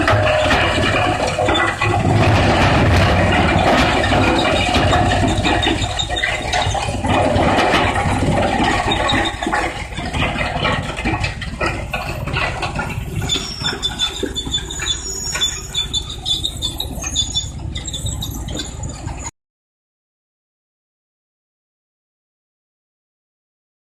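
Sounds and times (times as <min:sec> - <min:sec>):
wood crusher rumbling: 0:00.0 - 0:19.2
irregular mechanical knocks: 0:00.0 - 0:19.3
thin high squeals: 0:12.9 - 0:19.3.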